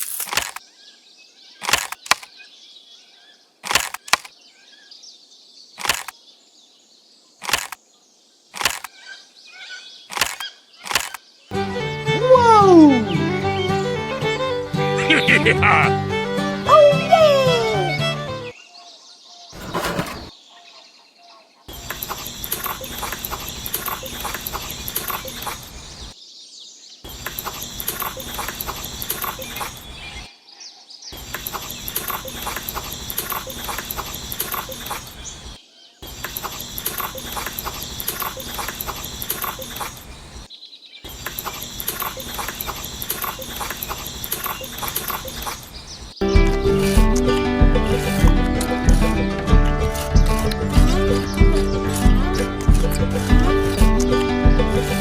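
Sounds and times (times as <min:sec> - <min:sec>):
birds chirping: 0:00.0 - 0:11.6, 0:18.5 - 0:46.5, 0:50.1 - 0:54.3
insects chirping: 0:21.8 - 0:26.2, 0:27.0 - 0:30.1, 0:31.2 - 0:46.1.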